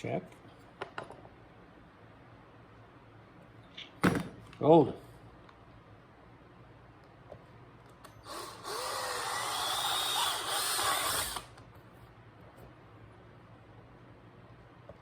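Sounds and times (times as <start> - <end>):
power drill boring plastic: 8.3 - 11.5.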